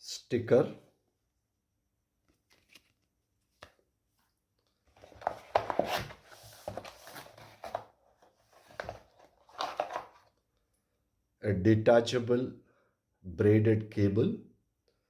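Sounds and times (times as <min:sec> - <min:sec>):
packaging crinkling and clicking: 0:08.8 - 0:10.4.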